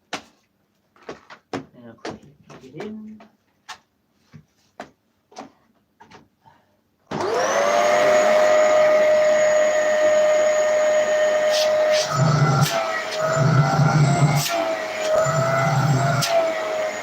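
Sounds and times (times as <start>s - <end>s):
vacuum cleaner motor whine: 7.1s - 17.0s.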